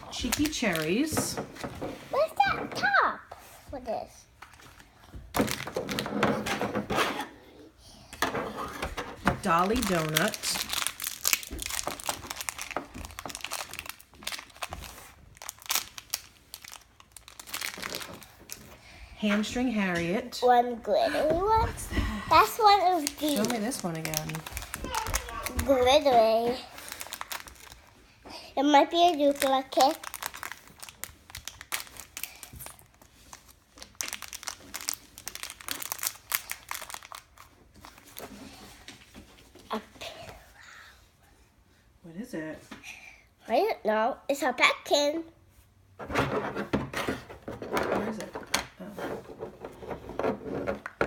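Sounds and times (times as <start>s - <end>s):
toy packaging crinkling: 0.0s - 1.2s, 5.4s - 6.2s, 9.4s - 18.9s, 22.4s - 28.0s, 28.8s - 38.4s.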